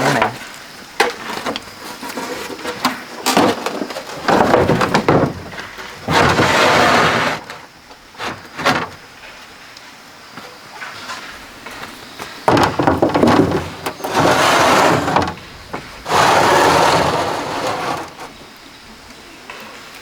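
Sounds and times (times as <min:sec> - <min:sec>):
bamboo rasping scrapes: 0:13.1 - 0:15.4, 0:16.0 - 0:18.4.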